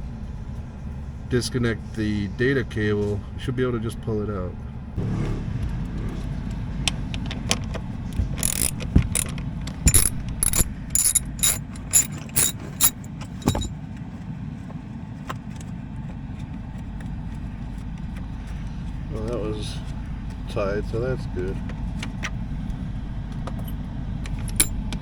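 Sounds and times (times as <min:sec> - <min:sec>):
ratchet wrench clicking: 0:08.2 - 0:13.7, 0:24.4 - 0:24.8.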